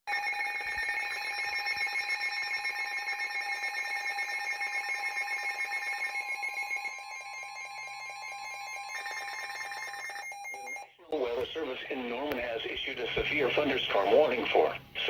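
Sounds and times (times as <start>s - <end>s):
rapid alarm beeping: 0.1s - 10.9s
steady alarm tone: 0.1s - 11.9s.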